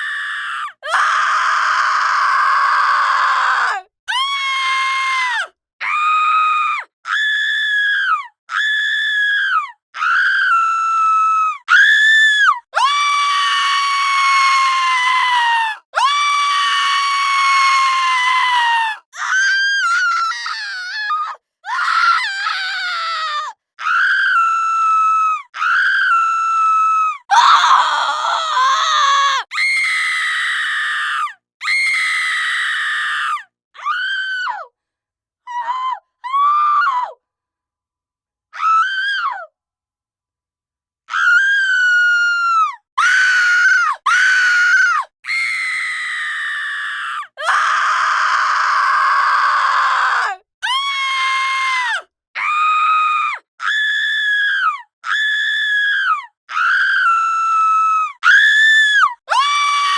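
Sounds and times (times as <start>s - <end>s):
women screaming: 27.3s - 31.0s.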